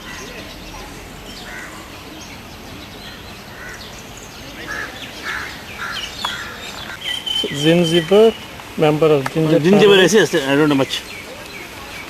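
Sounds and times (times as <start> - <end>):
birds calling: 0.0 - 12.0
thin high bird chirps: 6.0 - 8.5.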